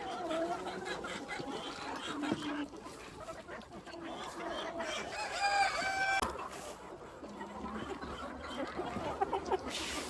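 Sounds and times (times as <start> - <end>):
chickens clucking: 0.0 - 10.0
rooster crowing: 5.1 - 6.2.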